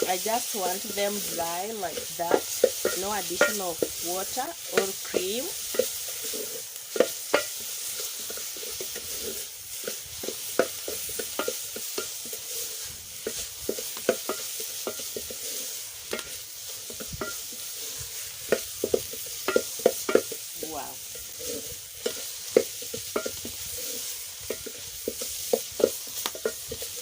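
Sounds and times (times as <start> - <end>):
greens sizzling in oil: 0.0 - 27.0
spoon scraping a pan: 0.0 - 27.0.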